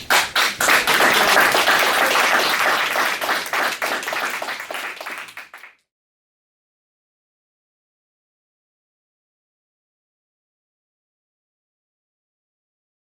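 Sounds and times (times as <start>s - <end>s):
many hands clapping: 0.0s - 5.8s.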